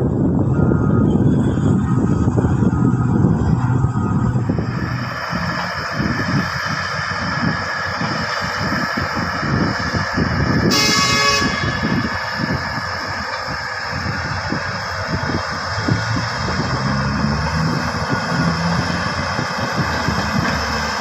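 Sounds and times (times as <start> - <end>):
heavy machinery running: 0.0 - 21.0
horn blast: 10.7 - 12.1.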